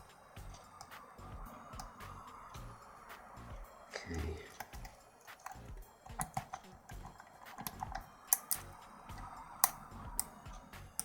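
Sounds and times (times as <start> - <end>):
lock pick clicking in lock: 4.6 - 11.0.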